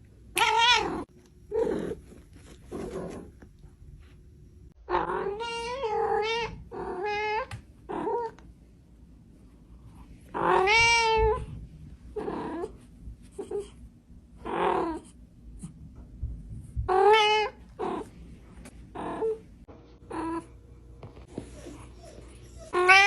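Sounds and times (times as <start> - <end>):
cat meowing: 10.4 - 11.5, 22.6 - 23.0.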